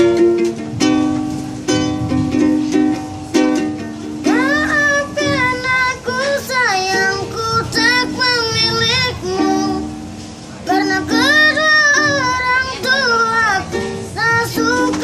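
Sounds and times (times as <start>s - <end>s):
strummed stringed instrument: 0.0s - 15.0s
child singing: 4.2s - 10.0s, 10.7s - 15.0s.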